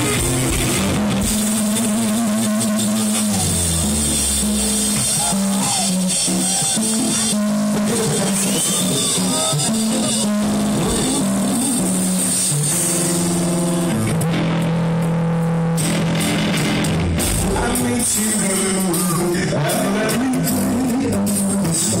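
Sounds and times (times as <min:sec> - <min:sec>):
rock band playing: 0:00.0 - 0:22.0
person singing: 0:04.6 - 0:12.7, 0:17.4 - 0:22.0.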